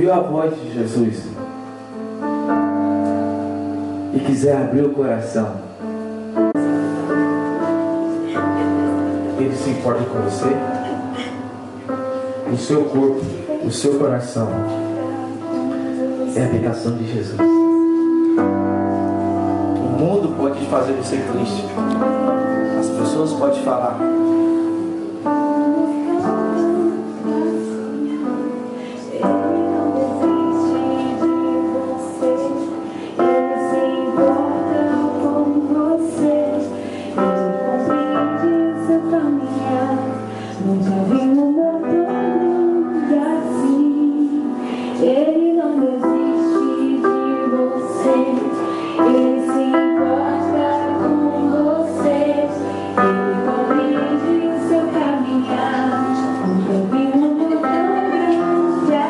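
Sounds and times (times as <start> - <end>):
sustained keyboard chords: 0.0 - 59.0
woman singing: 14.6 - 16.6, 25.3 - 59.0.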